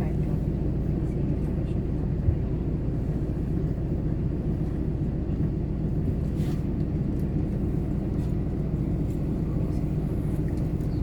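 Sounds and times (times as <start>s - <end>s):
car driving rumble inside cabin: 0.0s - 11.0s.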